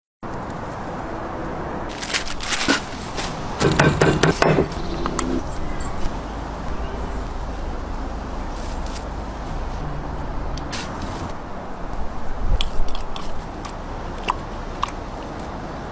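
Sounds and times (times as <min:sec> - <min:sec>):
sharp clicks and scrapes: 0:01.9 - 0:06.2, 0:12.6 - 0:15.5
steady low hum: 0:02.5 - 0:15.1.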